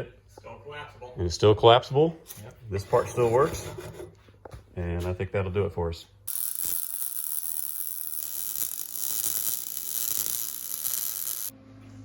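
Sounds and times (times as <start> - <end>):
welding arc crackling: 6.3 - 11.5.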